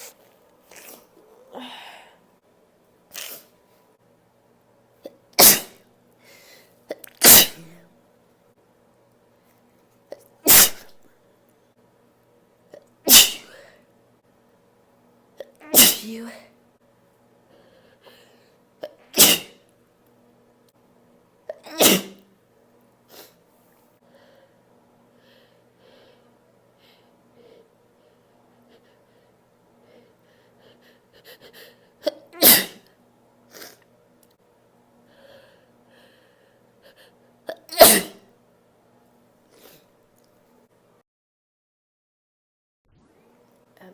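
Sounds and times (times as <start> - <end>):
person sneezing loudly: 0.0 - 1.8, 3.1 - 3.5, 5.4 - 5.8, 6.9 - 7.8, 10.5 - 11.0, 13.1 - 13.7, 15.6 - 16.4, 18.8 - 19.6, 21.5 - 22.3, 32.0 - 32.9, 37.5 - 38.3.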